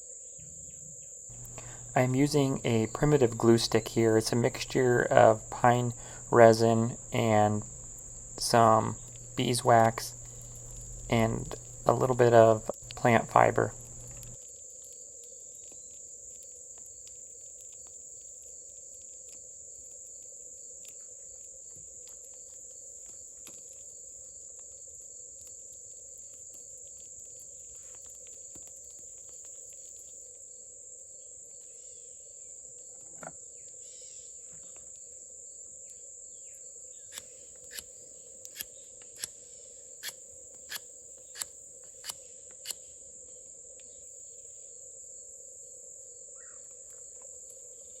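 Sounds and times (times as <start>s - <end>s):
insects chirring: 0.0s - 48.0s
sharp clicks: 1.3s - 14.4s, 37.1s - 37.9s.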